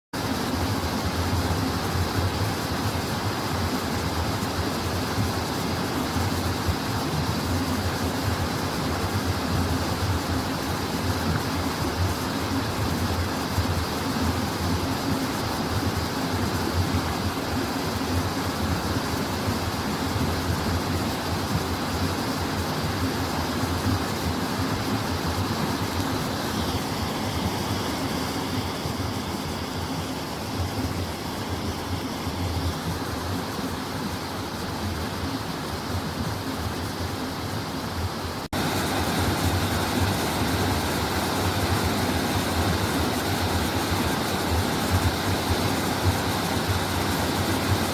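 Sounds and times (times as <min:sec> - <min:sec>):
stream water flowing over rocks: 0:00.2 - 0:47.9
river rushing: 0:16.2 - 0:47.9.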